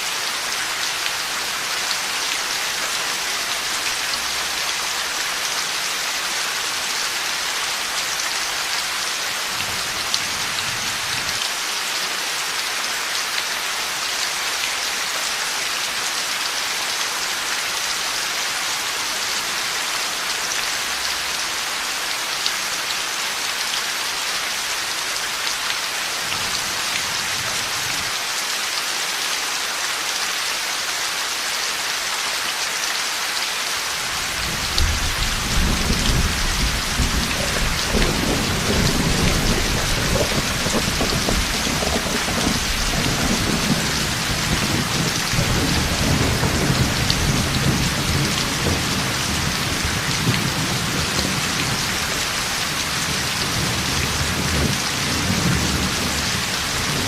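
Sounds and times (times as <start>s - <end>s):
heavy rain falling: 0.0s - 57.0s
deep rolling thunder: 34.7s - 49.0s.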